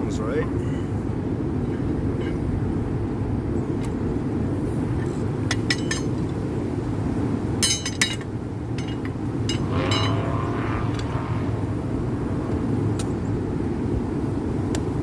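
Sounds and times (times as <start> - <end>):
steady low rumble: 7.9 - 15.0.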